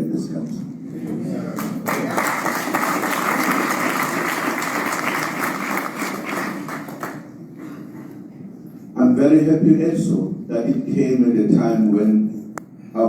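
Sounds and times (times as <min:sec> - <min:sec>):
audience applauding: 0:01.5 - 0:07.8.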